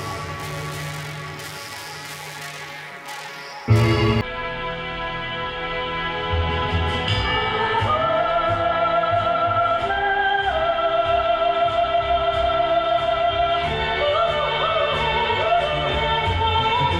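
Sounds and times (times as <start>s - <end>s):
melodic music with bass and beat: 0.0s - 4.3s.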